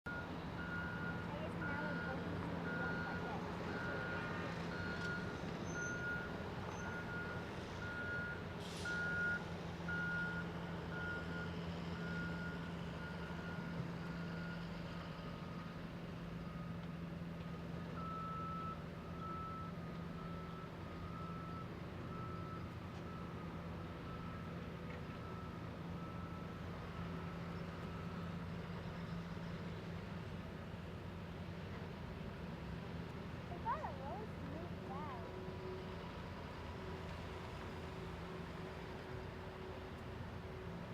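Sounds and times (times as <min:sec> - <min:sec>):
reversing alarm beeping: 0:00.1 - 0:15.7, 0:18.0 - 0:28.4
diesel engine running: 0:00.1 - 0:40.9.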